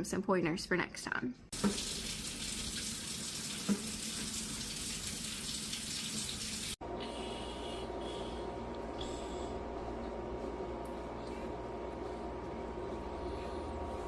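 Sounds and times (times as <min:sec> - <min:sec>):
tap water running into sink: 0:01.6 - 0:06.8
low steady hum: 0:06.8 - 0:14.0.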